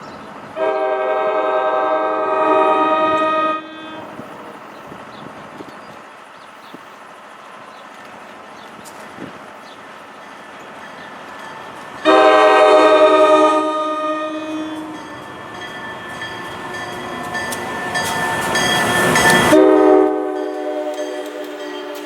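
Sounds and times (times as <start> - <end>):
passing train rumble: 0.0 - 22.0
train horn chord: 0.6 - 4.2, 12.0 - 15.2, 19.3 - 22.0.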